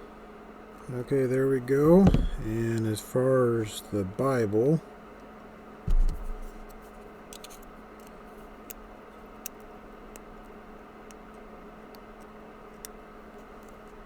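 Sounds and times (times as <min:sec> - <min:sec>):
faint steady hum: 0:00.0 - 0:14.0
metal lock clicks: 0:01.8 - 0:02.6
thump: 0:01.8 - 0:02.7, 0:05.9 - 0:06.5.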